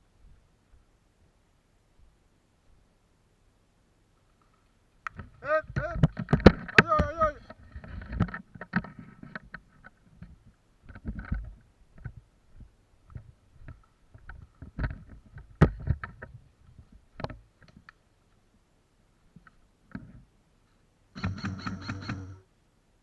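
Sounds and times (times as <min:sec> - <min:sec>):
knocks and clicks: 0:21.2 - 0:22.4.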